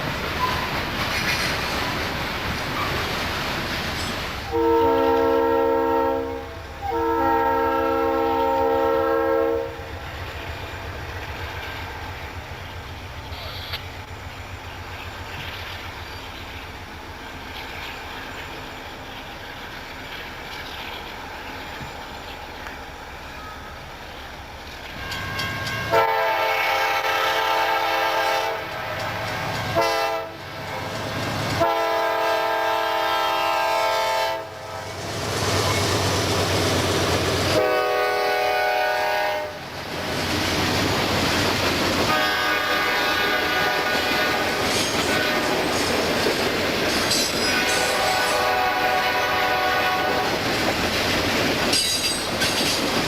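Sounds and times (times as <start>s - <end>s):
train rumbling by: 0.0s - 53.0s
locomotive air horn blasts: 4.5s - 10.0s, 25.8s - 31.0s, 31.6s - 35.0s, 37.5s - 39.6s, 42.1s - 45.6s, 47.4s - 50.4s.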